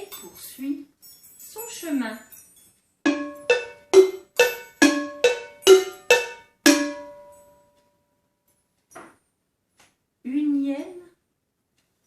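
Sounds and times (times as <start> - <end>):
pitched percussion notes ringing: 0.0 - 7.8.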